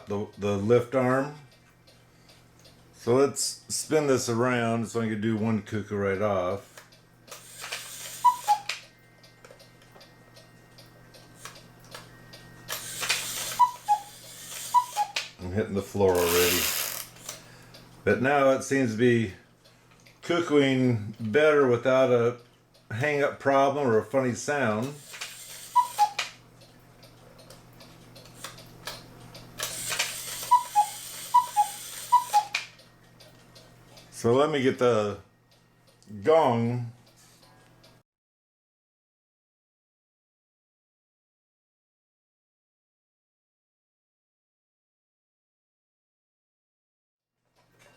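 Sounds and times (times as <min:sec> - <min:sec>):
cuckoo clock call: 0:07.4 - 0:09.8, 0:12.2 - 0:15.3, 0:25.0 - 0:26.4, 0:29.6 - 0:32.8.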